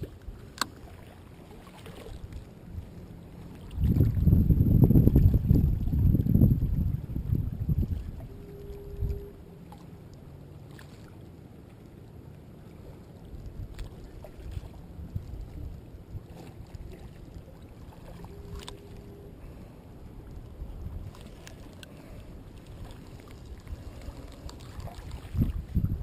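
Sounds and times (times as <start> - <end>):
wind on microphone: 3.6 - 9.5, 13.4 - 26.0.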